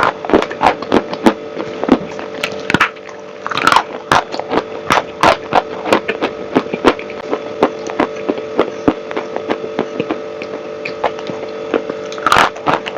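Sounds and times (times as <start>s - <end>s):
chalk crunching while chewed: 0.0s - 12.9s
steady hum: 0.0s - 12.9s.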